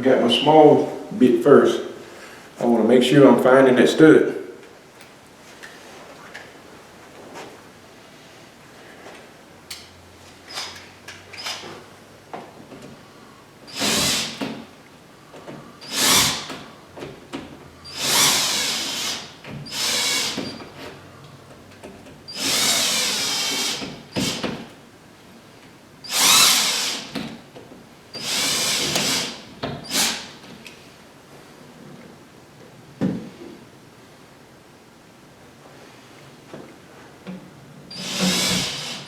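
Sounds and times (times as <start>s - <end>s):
impact drill drilling into wall: 13.7s - 14.6s, 15.8s - 16.6s, 17.9s - 20.6s, 22.3s - 24.5s, 26.1s - 27.2s, 28.2s - 30.3s, 37.9s - 39.0s.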